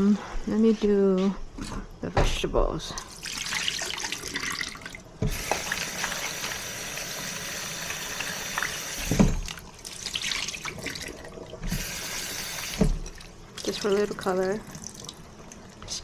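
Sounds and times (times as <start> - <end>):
tap running into a sink: 3.0 - 15.5
thump: 12.8 - 13.0.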